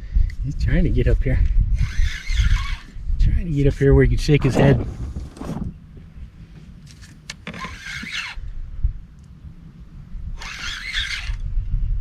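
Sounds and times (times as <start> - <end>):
steady low rumble: 0.0 - 7.3, 8.3 - 12.0
fishing reel whirring: 1.7 - 3.0, 7.5 - 8.5, 10.4 - 11.5.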